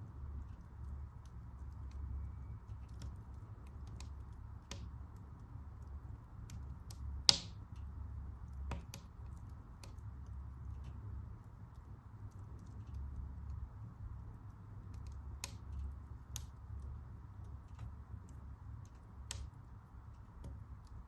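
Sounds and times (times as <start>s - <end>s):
low rumble of flames: 0.0s - 21.0s
wood fire crackling: 0.1s - 21.0s
loud pop of burning wood: 7.3s - 7.6s.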